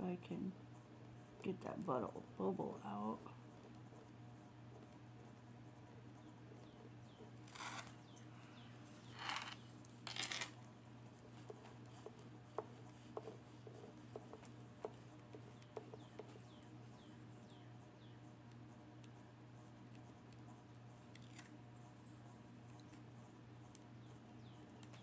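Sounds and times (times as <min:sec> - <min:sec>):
hand rubbing plastic film: 0:07.5 - 0:08.0
fingers tapping on canvas: 0:11.4 - 0:17.1.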